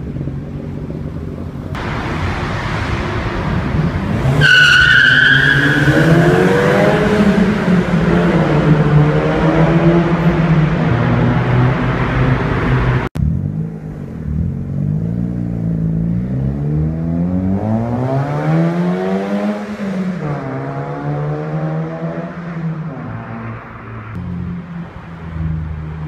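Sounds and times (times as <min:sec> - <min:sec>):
car engine revving hard: 0:01.8 - 0:13.1.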